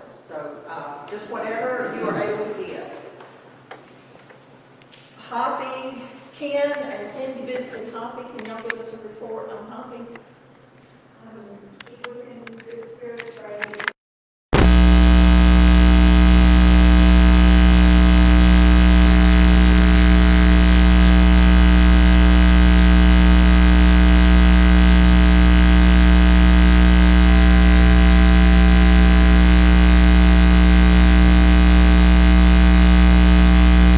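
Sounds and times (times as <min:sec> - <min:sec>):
electrical hum-buzz: 0:14.5 - 0:33.9.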